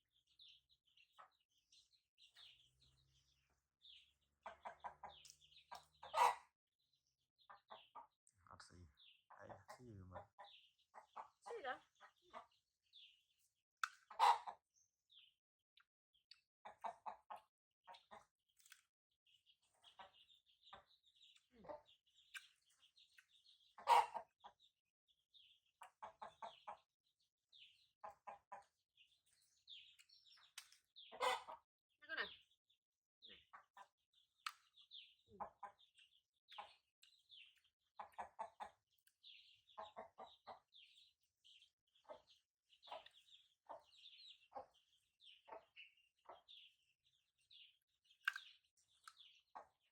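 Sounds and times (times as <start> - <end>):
chicks peeping: 0.2 - 6.6, 7.4 - 15.3, 16.2 - 24.7, 25.3 - 32.6, 33.2 - 49.9
hen clucking: 4.3 - 6.6, 7.4 - 13.1, 13.8 - 14.7, 16.6 - 18.3, 19.6 - 22.5, 23.4 - 24.7, 25.8 - 26.9, 27.6 - 28.8, 30.4 - 32.5, 33.3 - 33.9, 34.5 - 46.8, 48.3 - 49.9.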